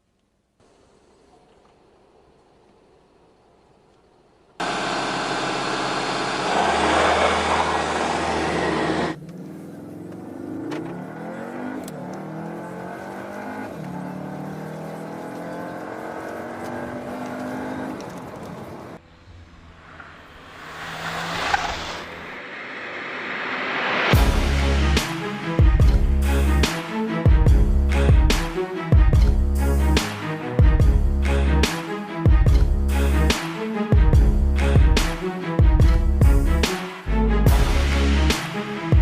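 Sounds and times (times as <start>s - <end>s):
car engine revving: 4.6s - 26.8s.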